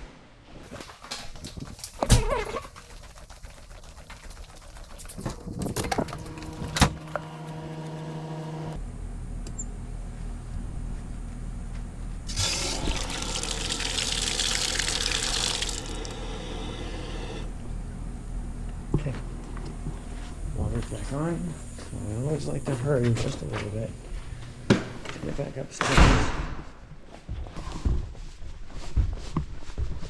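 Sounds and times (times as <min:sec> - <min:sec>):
steady plumbing hum: 0:00.6 - 0:08.8, 0:10.1 - 0:25.7
water rushing through plumbing: 0:00.6 - 0:08.8, 0:12.3 - 0:17.5.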